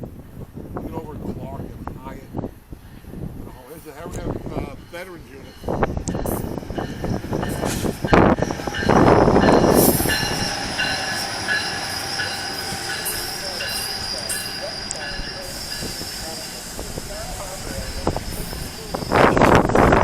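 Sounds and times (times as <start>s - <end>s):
locomotive rushing past: 3.8s - 20.0s
train wheels clacking over rails: 3.8s - 20.0s
high wheel squeal: 4.9s - 20.0s.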